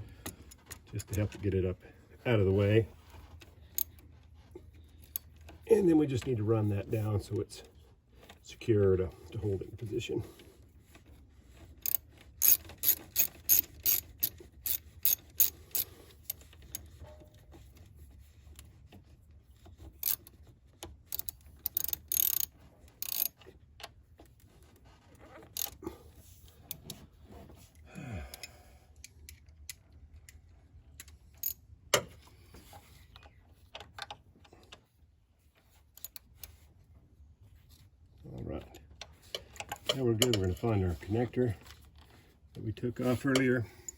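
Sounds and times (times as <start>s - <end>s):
ratchet wrench clicking: 11.8s - 16.8s, 20.0s - 20.3s, 21.1s - 23.4s.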